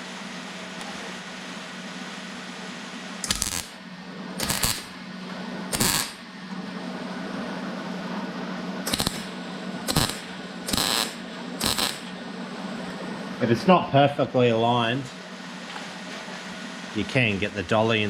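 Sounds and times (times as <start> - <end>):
steady low hum: 0.0 - 18.0
welder crackling bursts: 3.2 - 3.8, 4.4 - 5.0, 5.7 - 6.2, 8.9 - 12.1.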